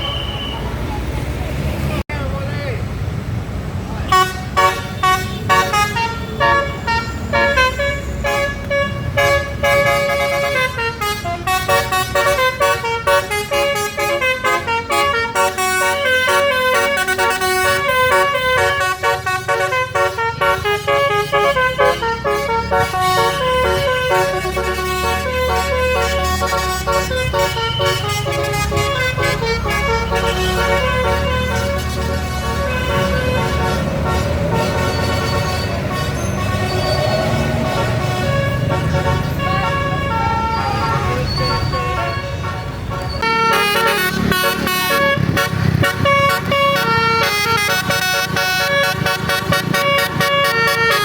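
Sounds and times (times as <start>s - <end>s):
bus engine running: 2.9s - 51.0s
multi-tone bus horn melody: 4.1s - 51.0s.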